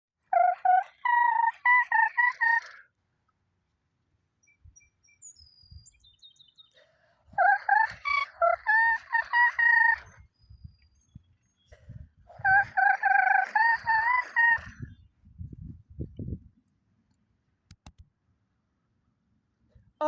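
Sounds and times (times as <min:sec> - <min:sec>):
small birds chirping: 0:04.4 - 0:15.2.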